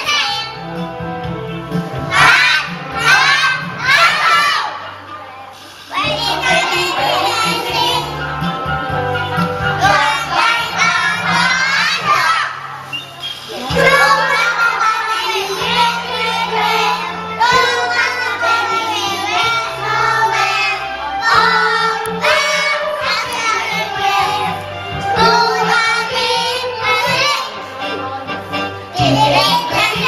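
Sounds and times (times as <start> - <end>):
several voices singing: 2.1 - 4.8, 5.9 - 30.0
backing music with bass line: 6.0 - 12.5, 13.6 - 30.0.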